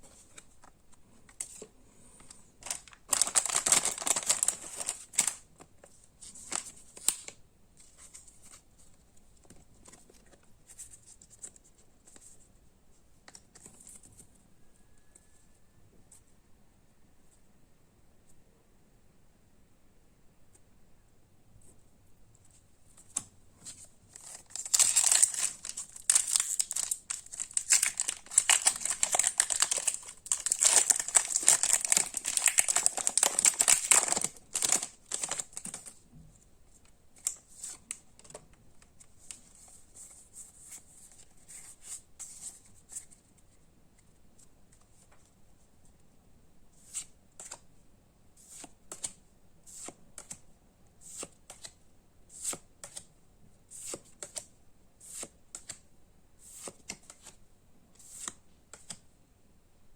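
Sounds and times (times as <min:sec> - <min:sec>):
foil wrapper tearing and crinkling: 0:02.6 - 0:05.4, 0:24.2 - 0:35.9.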